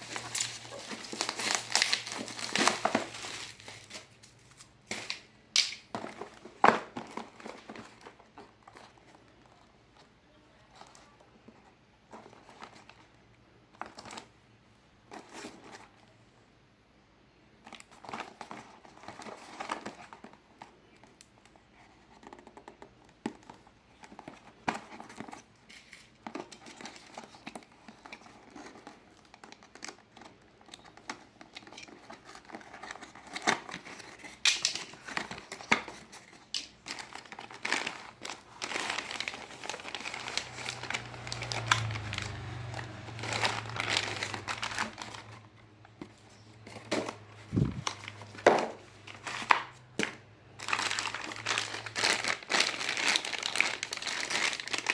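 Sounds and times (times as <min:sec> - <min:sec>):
packaging crinkling: 0:00.0 - 0:09.2, 0:23.4 - 0:54.9.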